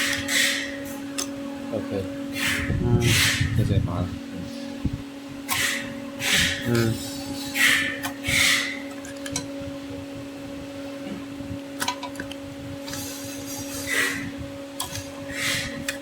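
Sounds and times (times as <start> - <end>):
steady electrical hum: 0.0 - 16.0.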